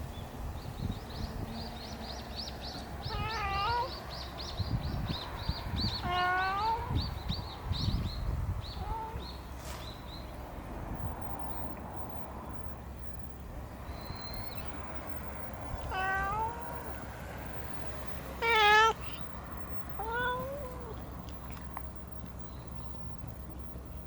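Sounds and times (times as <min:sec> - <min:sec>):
cat meowing: 0:03.1 - 0:04.0, 0:06.0 - 0:07.0, 0:08.8 - 0:09.2, 0:15.8 - 0:17.0, 0:18.4 - 0:21.0.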